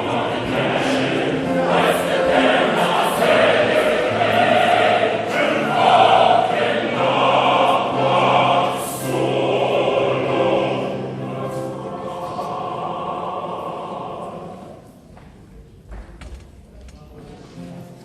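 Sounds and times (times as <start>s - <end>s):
choir singing in harmony: 0.0s - 15.0s.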